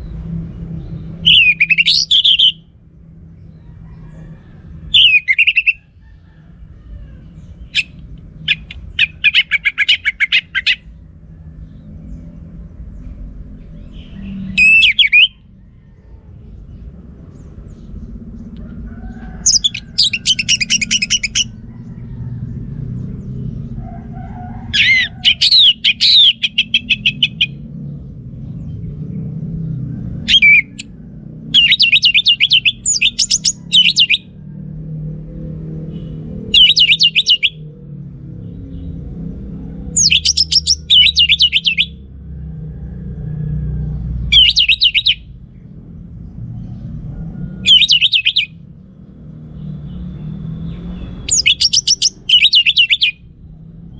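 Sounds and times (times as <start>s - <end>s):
bird singing trills: 0.8s - 2.7s, 4.9s - 5.9s, 7.3s - 11.0s, 12.9s - 15.6s, 19.4s - 21.7s, 24.8s - 27.7s, 30.2s - 34.4s, 36.0s - 37.7s, 39.8s - 42.0s, 44.3s - 45.4s, 47.6s - 48.6s, 49.6s - 53.9s.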